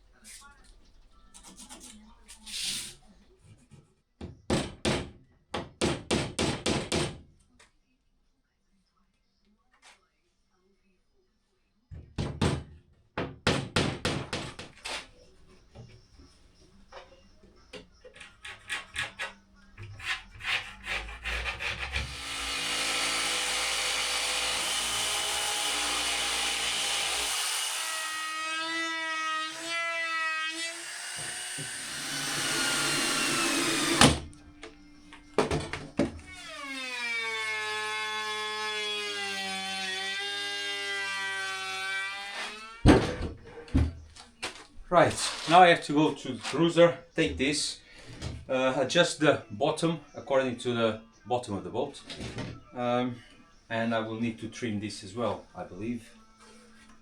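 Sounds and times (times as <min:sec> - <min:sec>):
power saw cutting wood: 0:18.3 - 0:34.4, 0:36.1 - 0:43.0.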